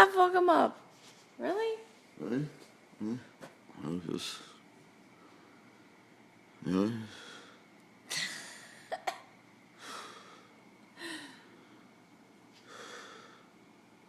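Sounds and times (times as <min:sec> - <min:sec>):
breathy puffs of air: 0:12.6 - 0:13.6.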